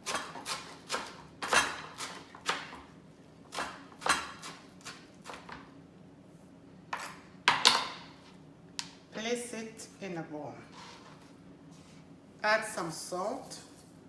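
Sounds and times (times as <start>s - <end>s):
knife chopping herbs: 0.0s - 2.9s, 3.5s - 5.5s.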